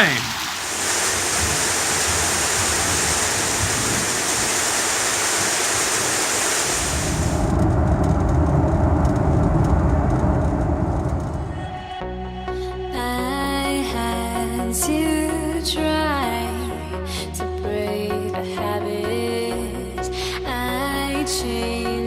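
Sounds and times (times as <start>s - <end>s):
heavy rain pouring: 0.0s - 11.8s.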